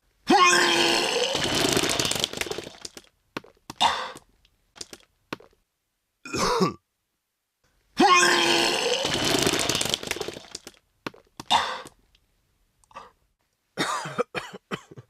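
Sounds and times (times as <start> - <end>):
person retching: 0.3 - 3.0, 3.7 - 4.9, 6.3 - 6.8, 8.0 - 10.8, 11.4 - 12.0
person spitting and gagging: 0.3 - 3.0, 3.7 - 4.9, 8.0 - 10.7, 11.4 - 12.0.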